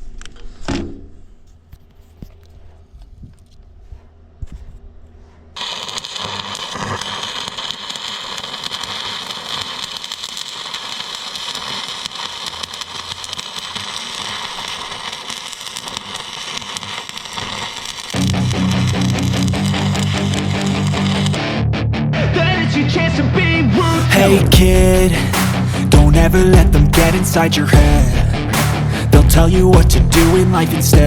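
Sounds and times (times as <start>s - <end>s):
welding arc crackling: 5.6s - 21.5s, 23.8s - 31.0s.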